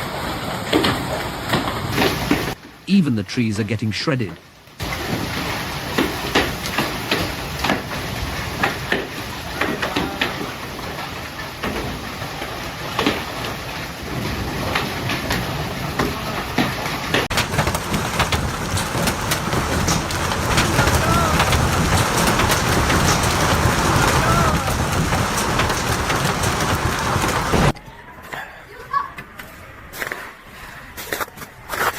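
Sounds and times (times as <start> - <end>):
heavy hail pelting down: 0.0 - 2.6, 4.8 - 27.8.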